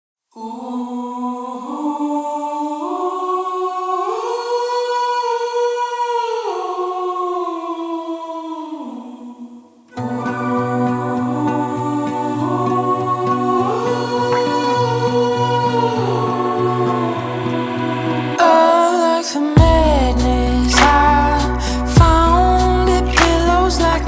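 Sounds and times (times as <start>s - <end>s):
choir-like hummed chords: 10.0s - 24.0s
music with steady beat: 19.6s - 24.0s.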